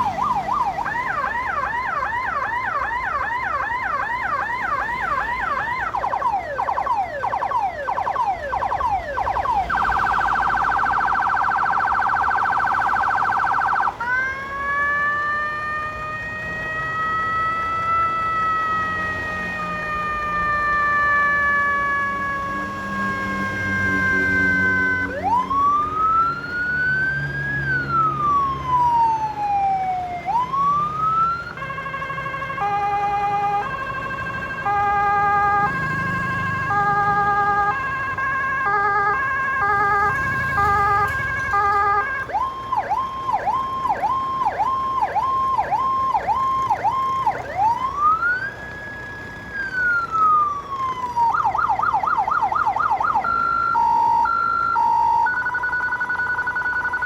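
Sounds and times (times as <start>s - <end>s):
electronic police siren: 0.0s - 57.0s.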